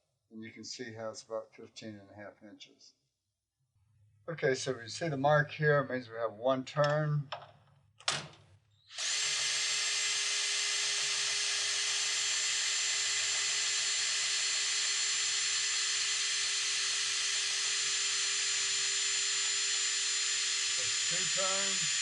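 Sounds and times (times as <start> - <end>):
drill whirring: 8.8 - 22.0.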